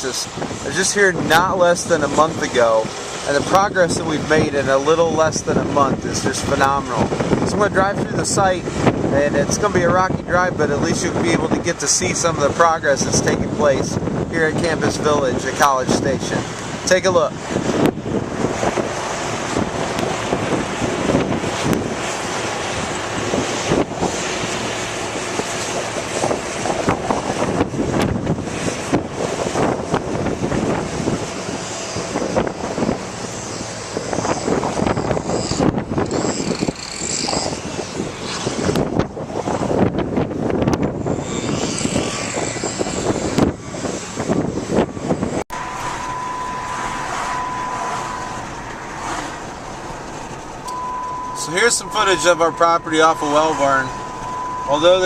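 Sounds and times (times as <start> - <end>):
steady rushing noise: 0.0 - 55.0
tyre and road noise: 0.0 - 55.0
wind on microphone: 0.0 - 55.0
thin high tone: 45.5 - 55.0.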